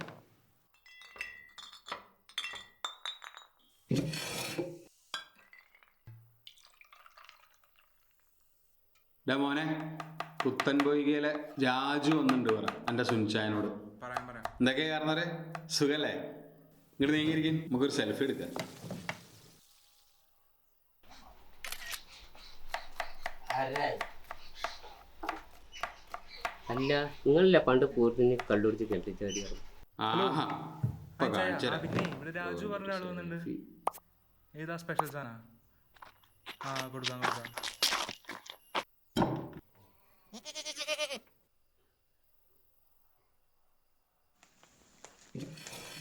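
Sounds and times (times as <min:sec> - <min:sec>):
glassware clinking: 0:00.7 - 0:04.5
faint hiss: 0:16.8 - 0:20.4.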